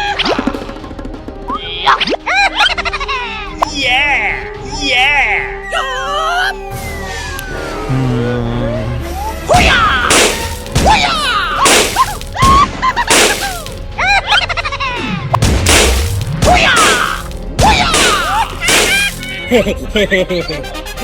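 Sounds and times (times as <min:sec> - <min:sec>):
baby monkey squealing: 0:05.6 - 0:07.9
sharp splashing or smacking hits: 0:09.6 - 0:13.9, 0:15.4 - 0:19.5.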